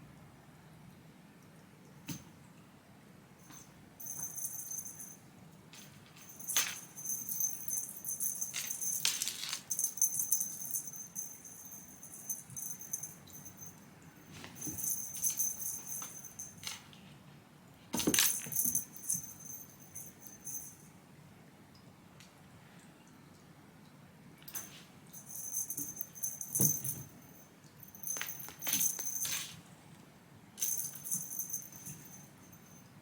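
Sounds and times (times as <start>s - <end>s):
jingling rattling: 3.5s - 5.2s, 5.8s - 13.8s, 14.5s - 16.8s, 18.0s - 20.8s, 25.2s - 29.6s, 30.6s - 32.9s.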